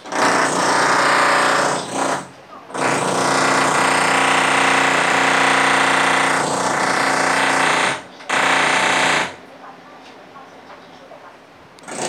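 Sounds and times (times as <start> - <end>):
hammering power drill: 0.0 - 9.4, 11.8 - 12.0.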